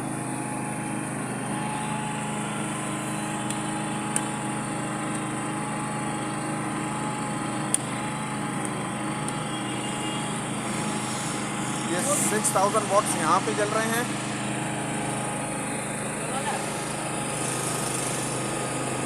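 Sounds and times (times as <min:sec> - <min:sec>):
generator humming: 0:00.0 - 0:19.0
faint high whine: 0:09.4 - 0:14.1.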